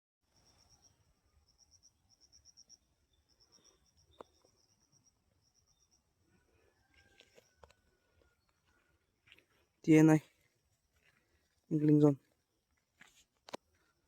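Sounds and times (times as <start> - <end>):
faint insect chirping: 0.2 - 14.0.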